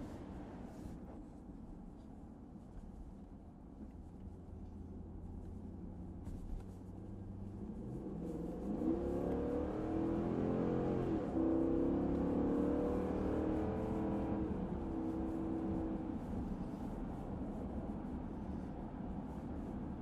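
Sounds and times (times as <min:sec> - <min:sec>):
car engine accelerating: 0:07.4 - 0:18.7.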